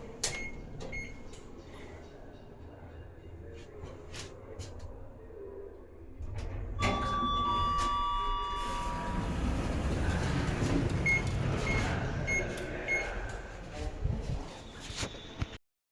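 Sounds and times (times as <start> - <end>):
elevator chime: 6.8 - 13.1
low rumble: 8.7 - 14.4.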